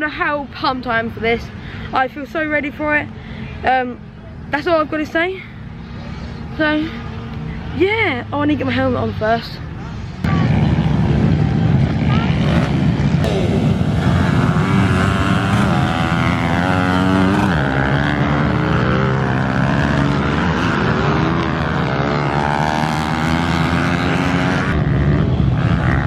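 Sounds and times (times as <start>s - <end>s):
pit bike engine revving: 10.2s - 26.0s.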